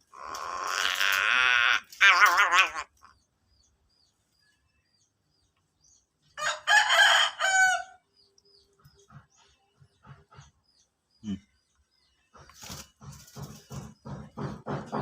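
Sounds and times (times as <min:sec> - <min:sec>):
rooster-like crow: 0:06.4 - 0:08.0.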